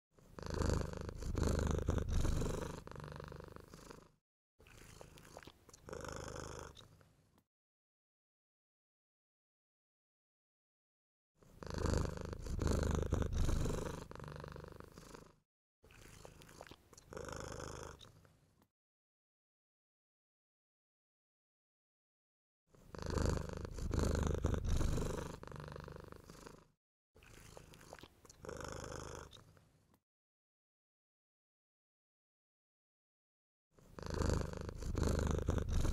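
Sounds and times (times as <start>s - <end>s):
cat purring: 0.2s - 7.1s, 11.5s - 18.3s, 22.8s - 29.6s, 33.8s - 35.9s.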